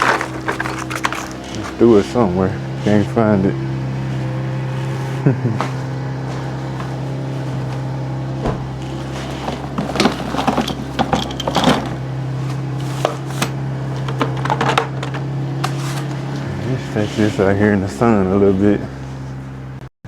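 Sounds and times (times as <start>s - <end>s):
low machine hum: 0.0s - 19.9s
tools clinking and knocking: 9.3s - 12.0s, 13.0s - 15.8s.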